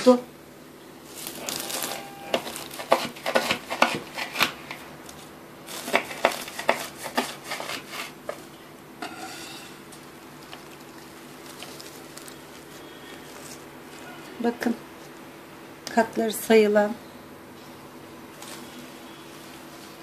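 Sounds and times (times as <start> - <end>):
knife crunching through pastry: 1.2 - 8.4, 9.6 - 14.3.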